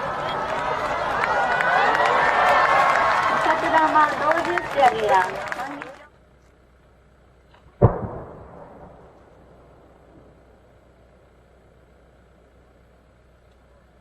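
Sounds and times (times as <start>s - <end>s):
firework bang: 7.5s - 10.8s.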